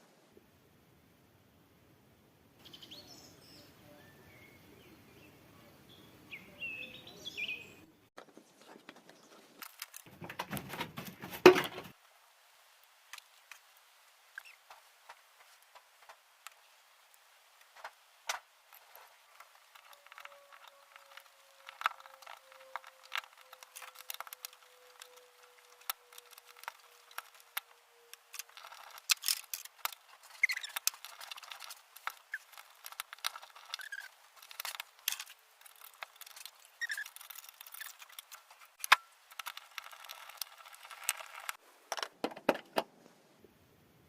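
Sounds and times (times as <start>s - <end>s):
brief squeaks: 30.2s - 30.9s, 33.6s - 34.1s, 36.4s - 38.1s.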